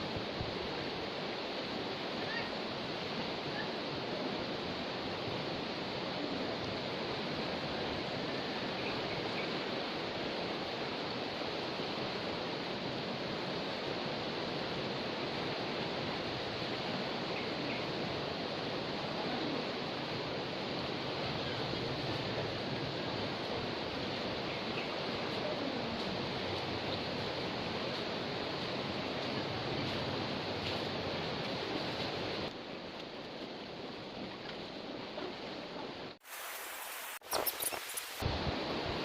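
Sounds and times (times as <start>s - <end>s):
river water rushing: 36.2s - 39.0s.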